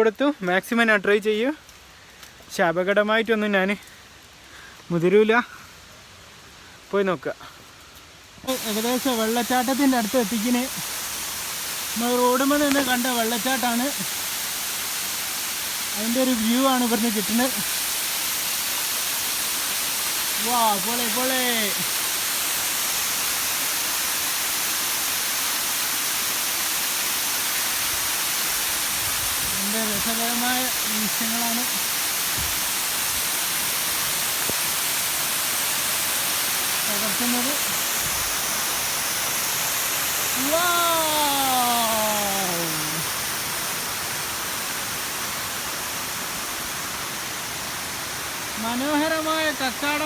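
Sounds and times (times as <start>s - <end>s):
waterfall rushing: 8.5s - 50.0s.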